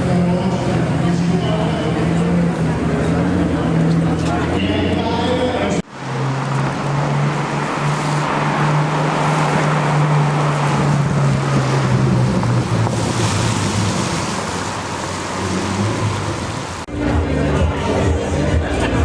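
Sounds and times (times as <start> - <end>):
car engine droning at low revs: 0.0 - 19.0
wind noise: 9.2 - 16.8.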